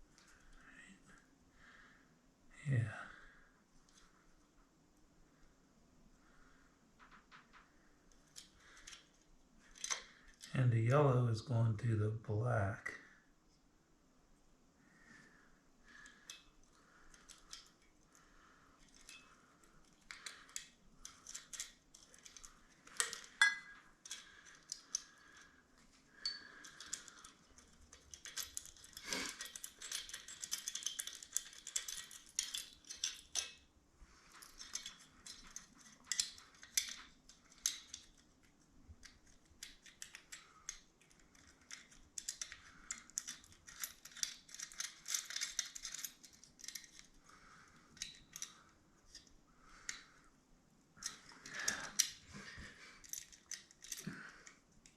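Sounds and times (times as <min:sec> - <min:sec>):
hand tools and metal parts clinking: 0:08.2 - 0:10.5, 0:18.8 - 0:25.5, 0:26.2 - 0:50.1, 0:51.0 - 0:54.9.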